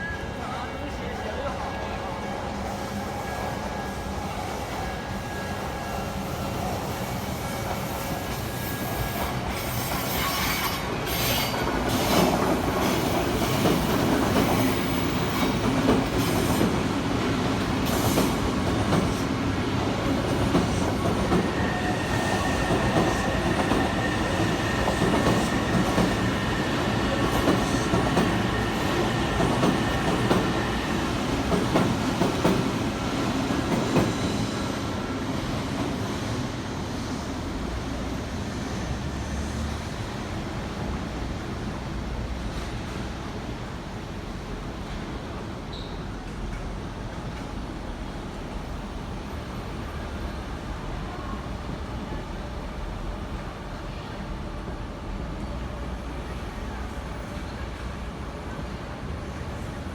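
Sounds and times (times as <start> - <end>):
train wheels rumbling on rails: 1.2 - 52.1
high wheel squeal: 7.0 - 13.3.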